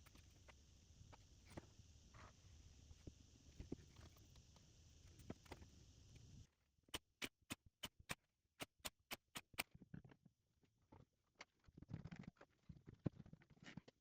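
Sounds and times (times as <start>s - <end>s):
faint steady hum: 0.0s - 6.6s.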